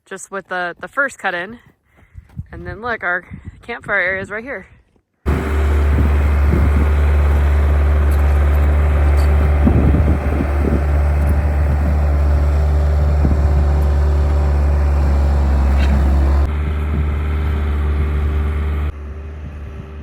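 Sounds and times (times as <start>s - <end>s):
engine low drone: 5.3s - 20.0s.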